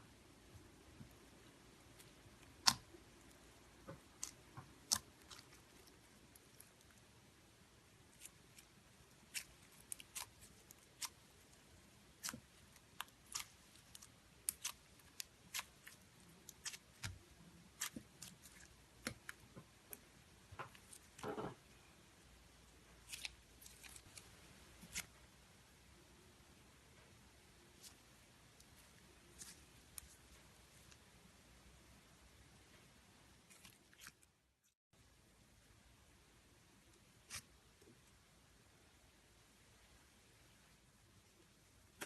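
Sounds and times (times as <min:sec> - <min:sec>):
slime crackling and clicking: 0:09.3 - 0:11.2, 0:12.2 - 0:17.2.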